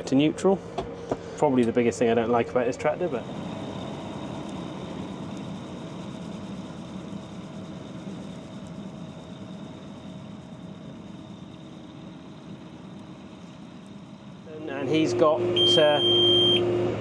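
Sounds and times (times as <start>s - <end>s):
faint steady whine: 0.0s - 16.7s
tractor engine hum: 0.0s - 17.0s.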